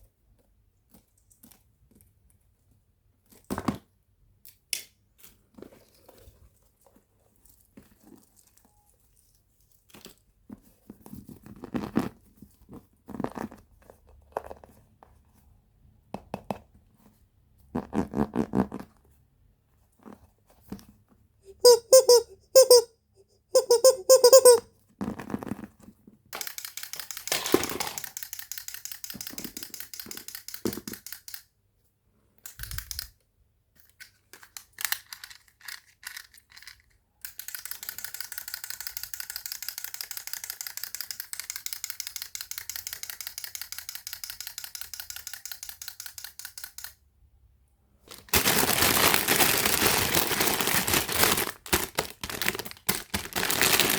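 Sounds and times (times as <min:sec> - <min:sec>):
toy mechanism ticking: 0:21.5 - 0:22.9, 0:23.6 - 0:24.6, 0:26.4 - 0:31.5, 0:34.4 - 0:47.0
toy squeaks: 0:21.5 - 0:24.7.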